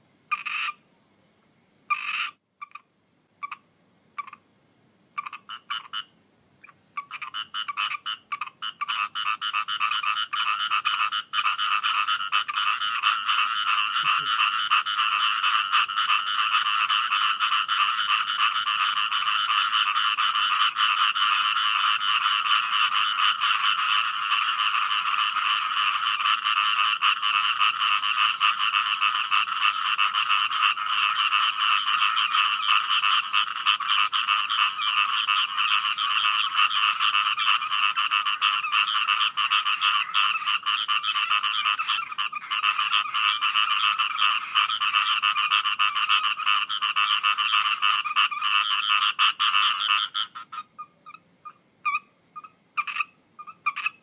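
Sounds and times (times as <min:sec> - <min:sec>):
chorus of frogs croaking: 0:00.0 - 0:01.2, 0:01.8 - 0:54.0.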